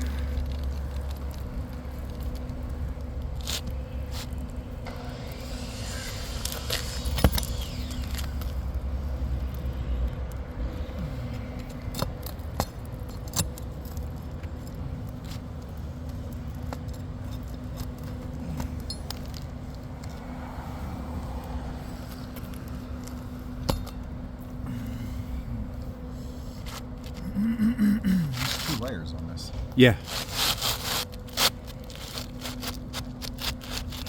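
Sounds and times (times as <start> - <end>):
scraping: 0.0 - 8.8
faint hum: 0.0 - 34.0
steady low rumble: 0.0 - 34.0.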